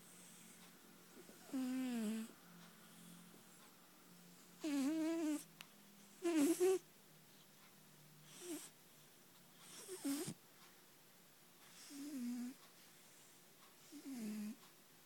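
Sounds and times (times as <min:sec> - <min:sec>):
cat snoring: 0:01.2 - 0:03.5, 0:04.6 - 0:05.5, 0:06.2 - 0:06.8, 0:08.2 - 0:08.8, 0:09.6 - 0:10.4, 0:11.7 - 0:14.6.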